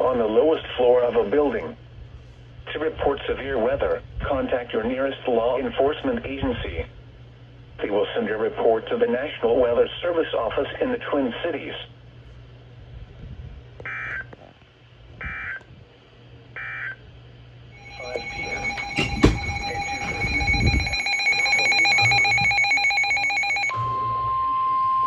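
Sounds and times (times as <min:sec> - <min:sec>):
steady alert tone: 0:17.8 - 0:23.7
ringing alarm tones: 0:17.8 - 0:23.9.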